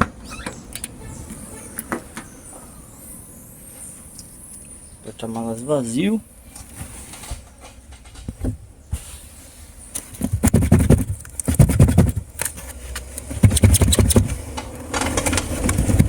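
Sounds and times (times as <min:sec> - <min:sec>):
clicks: 0:00.0 - 0:02.8
scraping and rustling: 0:06.5 - 0:16.0.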